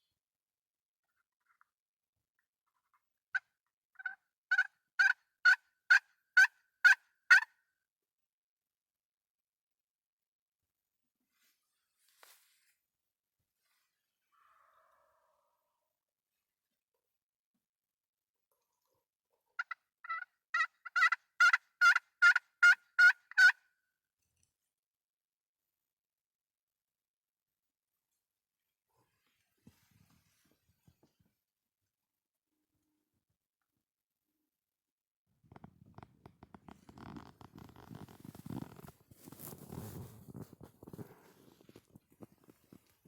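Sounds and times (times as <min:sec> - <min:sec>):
turkey yelps: 0:04.0 - 0:05.6, 0:06.4 - 0:07.5, 0:19.6 - 0:23.6.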